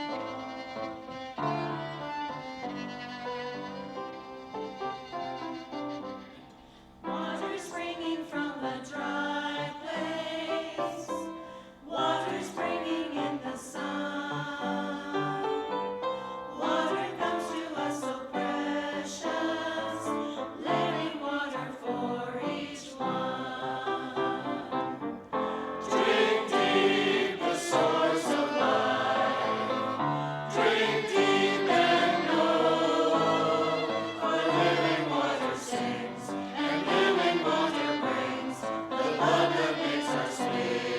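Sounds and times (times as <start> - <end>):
church choir singing: 0.0 - 40.9.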